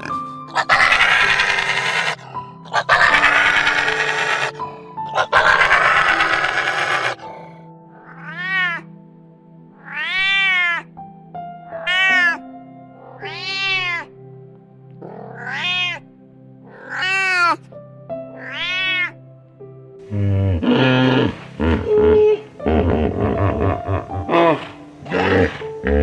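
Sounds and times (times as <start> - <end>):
cat meowing: 0.0 - 4.6, 5.2 - 7.2, 8.0 - 8.9, 9.8 - 10.9, 11.7 - 12.4, 13.0 - 14.2, 15.0 - 17.6, 18.3 - 19.2
music with held notes: 0.0 - 26.0.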